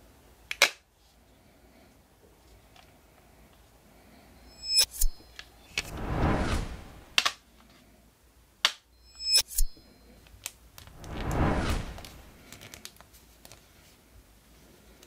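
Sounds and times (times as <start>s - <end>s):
brief metallic ring: 4.5s - 5.4s, 9.0s - 10.0s
whoosh: 4.7s - 7.2s, 10.8s - 12.6s.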